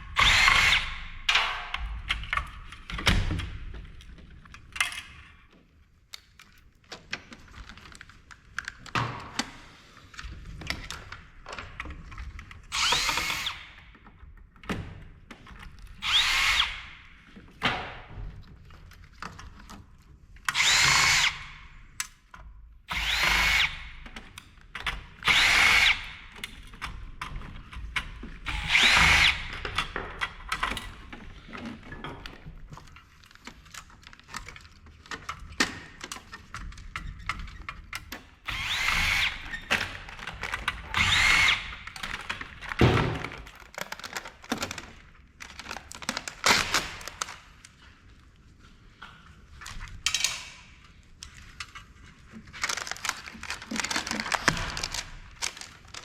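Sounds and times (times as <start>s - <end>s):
cordless drill motor whine: 12.7s - 13.7s, 16.0s - 16.9s, 20.5s - 21.4s, 22.9s - 23.8s, 25.2s - 26.2s, 28.5s - 29.5s, 38.5s - 39.4s, 41.0s - 41.7s.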